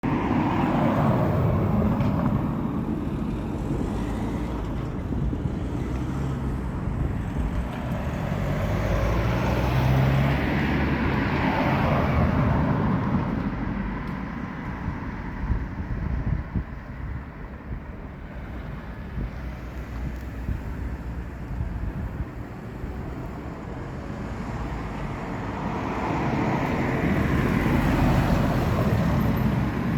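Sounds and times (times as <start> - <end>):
wind on microphone: 14.6 - 29.9.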